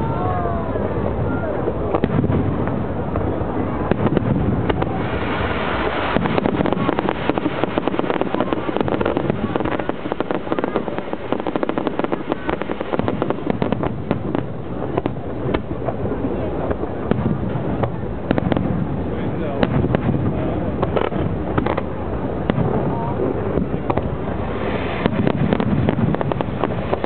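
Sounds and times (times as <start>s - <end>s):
fireworks bangs and crackling: 0.3s - 27.0s.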